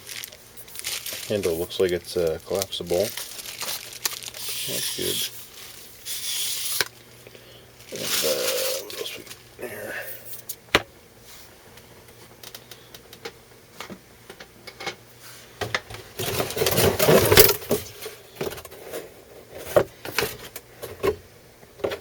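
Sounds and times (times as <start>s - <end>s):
packaging rustling: 0.0s - 9.6s.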